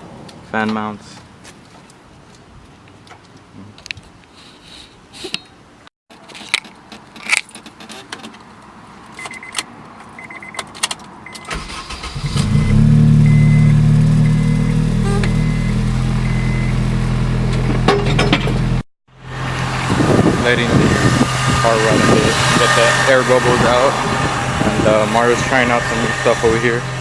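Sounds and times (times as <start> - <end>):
car warning chime beeping: 9.2 - 9.6, 10.2 - 16.8
car engine starting and idling: 10.4 - 27.0.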